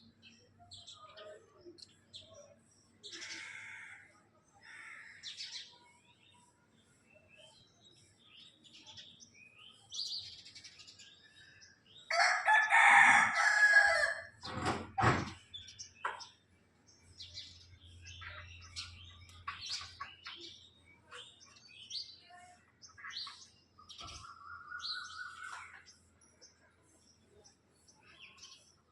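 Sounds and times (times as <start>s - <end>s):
small birds chirping: 0.0s - 28.9s
rooster crowing: 12.1s - 14.4s.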